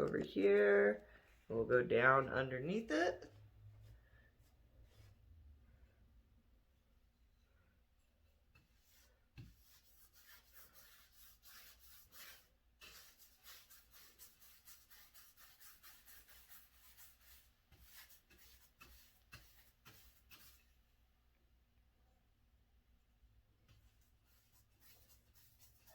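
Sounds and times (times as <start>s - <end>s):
paintbrush swishing on wall: 3.2s - 5.4s, 8.4s - 20.9s, 23.6s - 25.9s.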